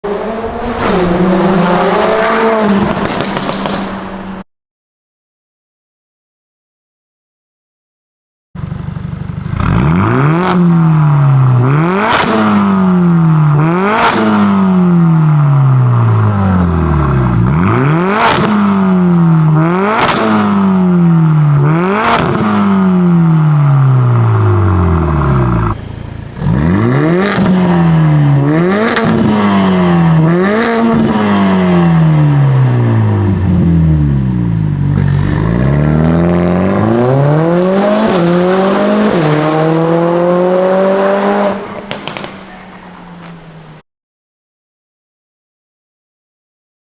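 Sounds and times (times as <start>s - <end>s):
car engine revving: 0.0s - 4.4s, 8.6s - 43.8s
exhaust pops and crackles: 2.9s - 4.0s, 41.9s - 42.6s.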